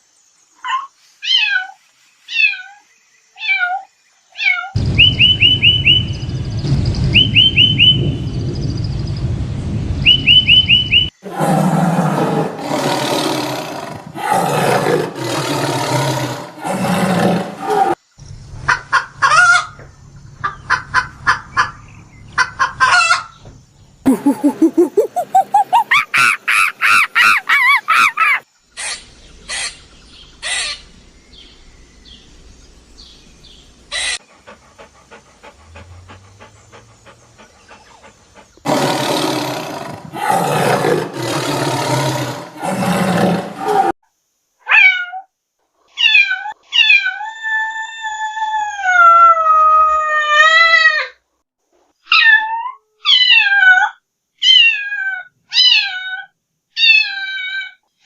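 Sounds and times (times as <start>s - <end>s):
harsh roaring animal call: 10.5s - 18.0s, 34.6s - 44.0s
cat meowing: 46.0s - 51.1s, 52.1s - 57.8s.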